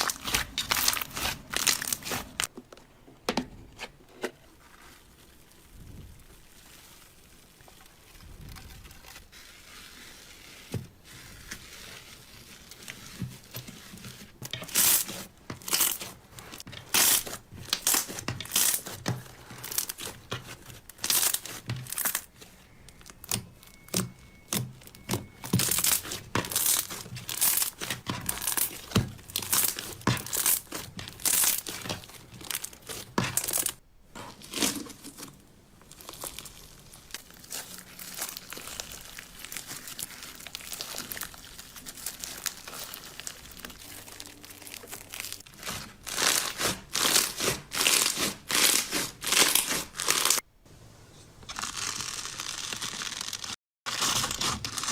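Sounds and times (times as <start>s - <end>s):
slime crackling and popping: 0.0s - 2.5s, 14.6s - 33.8s, 35.8s - 50.4s.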